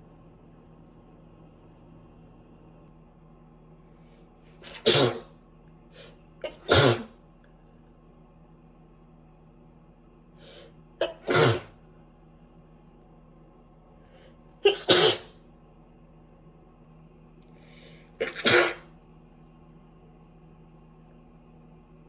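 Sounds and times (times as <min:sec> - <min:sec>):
woman sneezing: 0:06.4 - 0:07.2, 0:14.6 - 0:15.4, 0:18.2 - 0:18.9.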